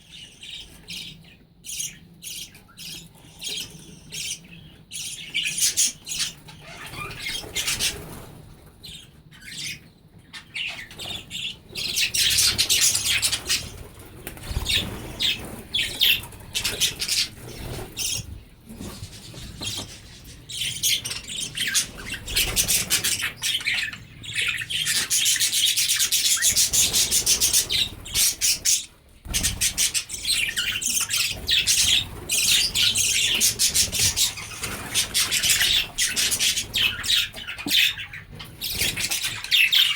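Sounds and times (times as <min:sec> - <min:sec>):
budgerigars chattering and squawking: 0:00.0 - 0:39.9.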